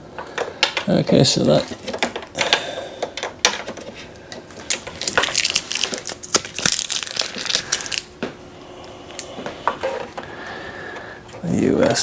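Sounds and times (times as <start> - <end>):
packing material crinkling: 4.5 - 8.2.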